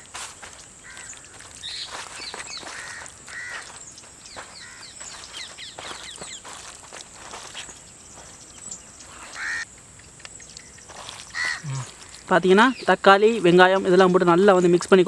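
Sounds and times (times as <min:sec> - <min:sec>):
harsh bird calls: 0:00.0 - 0:14.8
birds chirping: 0:00.0 - 0:15.0.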